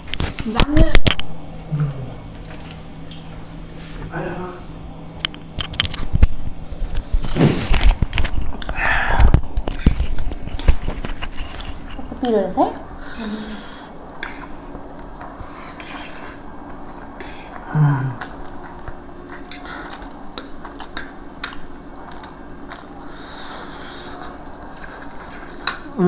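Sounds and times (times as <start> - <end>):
low vocal murmur: 1.7 - 2.3, 17.6 - 18.4
person chewing: 5.2 - 12.1, 12.9 - 26.0.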